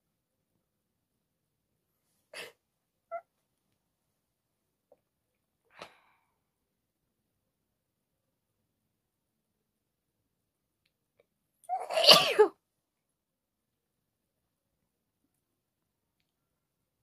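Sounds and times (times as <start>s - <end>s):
person sneezing: 11.8s - 12.6s.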